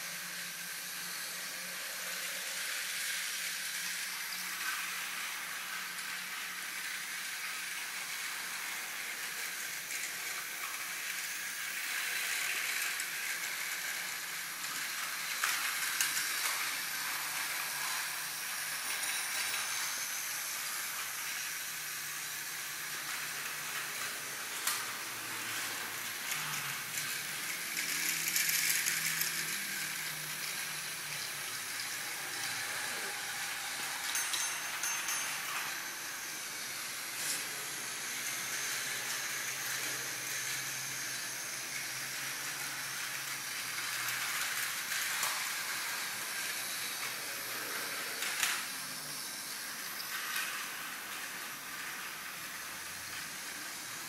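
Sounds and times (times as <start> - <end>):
steam locomotive hissing steam: 24.9 - 54.0.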